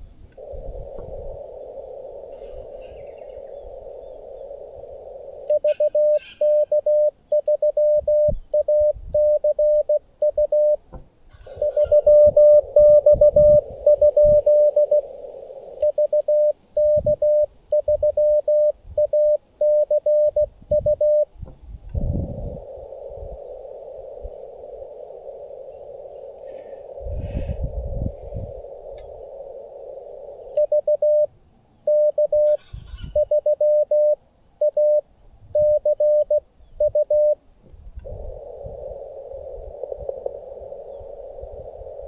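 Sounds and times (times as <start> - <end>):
morse code tone: 5.5 - 10.8, 11.6 - 15.0, 15.8 - 21.3, 30.6 - 31.3, 31.9 - 35.0, 35.6 - 37.4
band hiss: 26.4 - 28.9.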